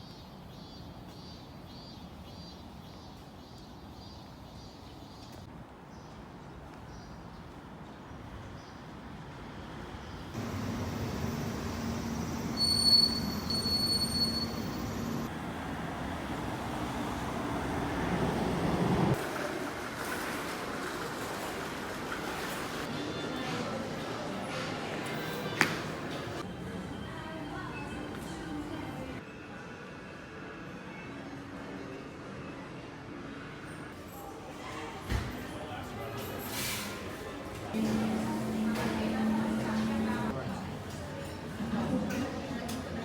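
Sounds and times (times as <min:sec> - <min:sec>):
short high squeals: 0:12.2 - 0:15.3.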